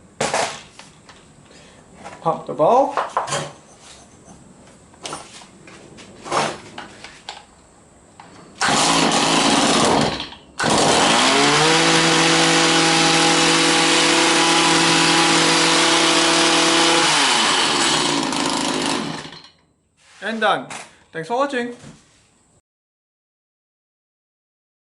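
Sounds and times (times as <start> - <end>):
small two-stroke engine running: 8.6 - 19.5.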